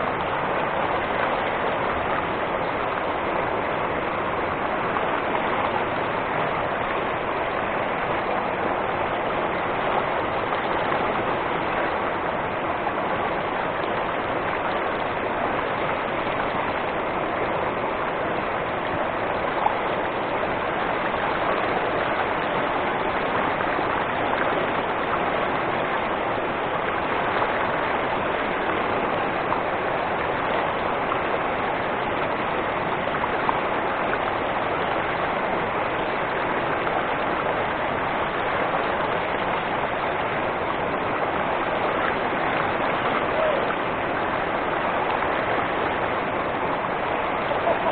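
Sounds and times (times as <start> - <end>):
waterfall rushing: 0.0 - 47.9.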